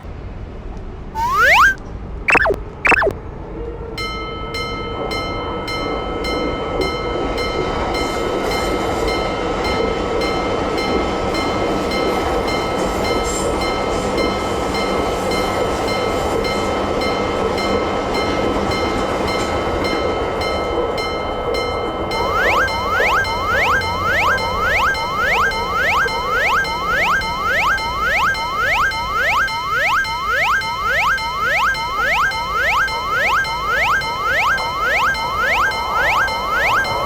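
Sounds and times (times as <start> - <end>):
sliding-pitch cartoon sound effects: 1.2 - 3.1, 22.2 - 37.0
level crossing warning bell: 4.0 - 37.0.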